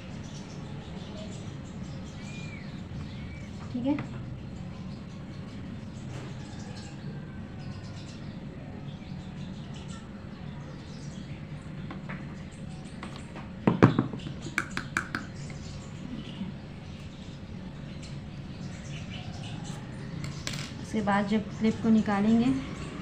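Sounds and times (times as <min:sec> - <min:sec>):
low steady hum: 0:00.0 - 0:23.0
knock: 0:13.7 - 0:15.2.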